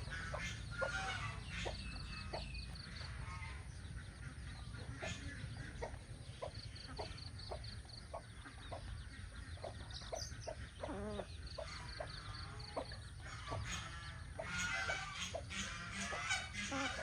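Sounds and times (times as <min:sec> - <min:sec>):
chicks peeping: 0:00.0 - 0:17.0
hen clucking: 0:00.0 - 0:17.0
harsh fowl calls: 0:13.3 - 0:17.0.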